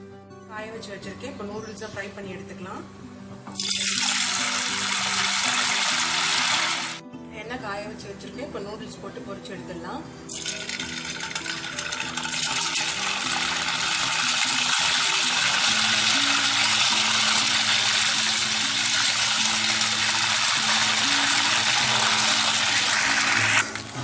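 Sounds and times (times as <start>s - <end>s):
noodles sizzling in hot oil: 3.5s - 7.0s, 10.3s - 24.0s.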